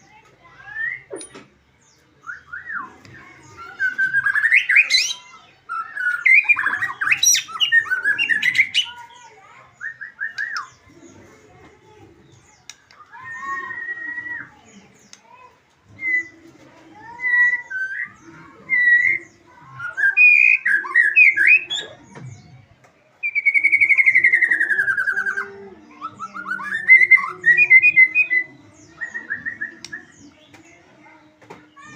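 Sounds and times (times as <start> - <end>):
bird whistling song: 3.6 - 9.0, 9.8 - 10.8, 16.0 - 16.4, 17.0 - 22.0, 23.2 - 30.4.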